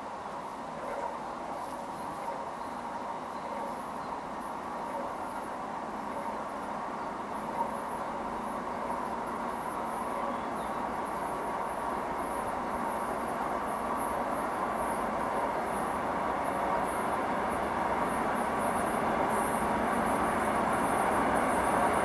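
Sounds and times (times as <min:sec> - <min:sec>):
diesel locomotives rumbling: 0:00.0 - 0:22.0.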